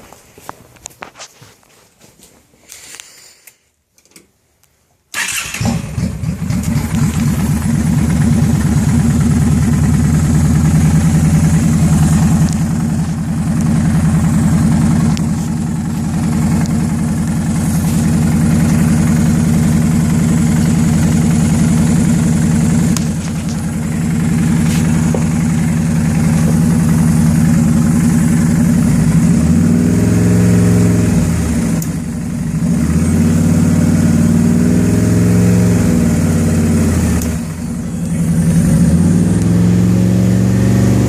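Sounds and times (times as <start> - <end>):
engine starting and idling: 5.1 - 28.8.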